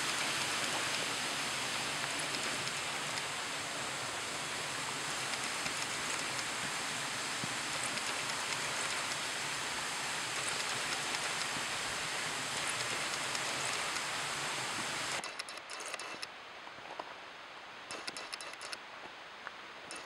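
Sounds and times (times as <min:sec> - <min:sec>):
rushing waterfall: 0:00.0 - 0:20.0
faint clicks: 0:07.7 - 0:09.2, 0:15.2 - 0:16.3, 0:17.9 - 0:18.8.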